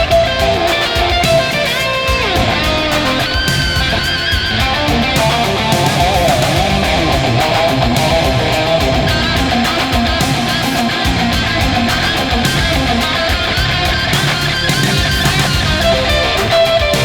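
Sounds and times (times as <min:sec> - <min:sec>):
bass and drums: 0:00.0 - 0:17.0
electric guitar long notes: 0:00.0 - 0:17.0.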